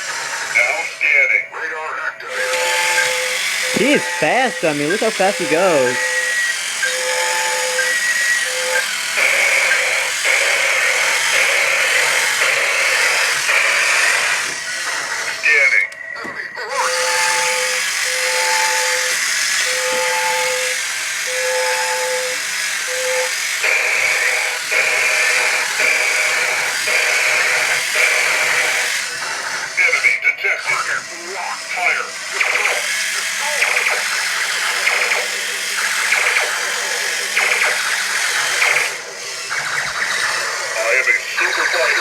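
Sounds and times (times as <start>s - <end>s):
toy electric motor whirring: 0.0s - 1.4s, 2.2s - 4.2s, 4.8s - 15.9s, 16.6s - 42.0s
alarm beeps: 3.7s - 6.2s
electronic sound effect bursts: 3.8s - 6.0s.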